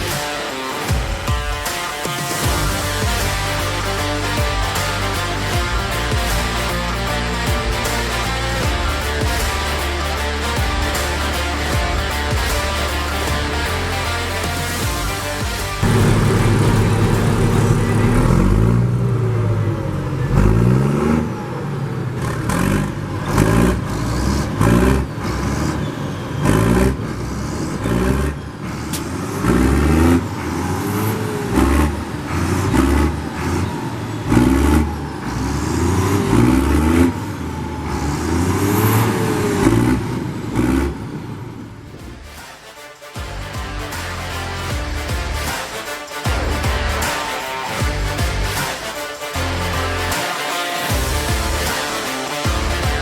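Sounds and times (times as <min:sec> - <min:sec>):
tractor engine revving: 0:00.0 - 0:19.4, 0:43.2 - 0:53.0.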